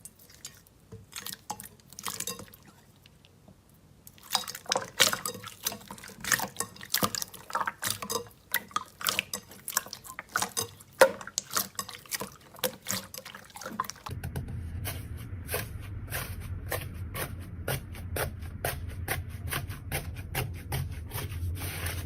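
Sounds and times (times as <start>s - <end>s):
slime squelching: 0.0s - 14.1s
low hum: 14.1s - 22.0s.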